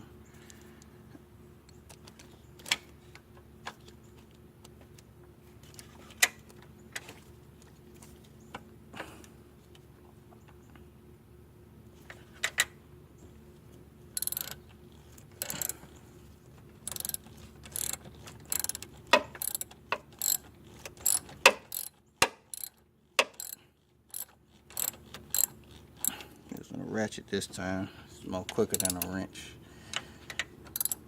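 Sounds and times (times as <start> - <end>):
socket ratchet clicking: 14.2 - 14.6, 15.4 - 15.8, 16.9 - 26.1, 28.7 - 29.2, 30.7 - 31.0
tool clicks: 14.2 - 14.6, 15.4 - 15.7, 16.9 - 21.9, 22.5 - 26.2, 28.7 - 29.1, 30.7 - 31.0.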